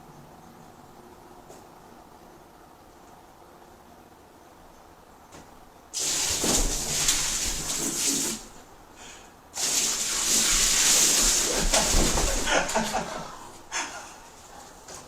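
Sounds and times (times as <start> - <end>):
water spraying: 5.9 - 8.7, 9.5 - 13.2.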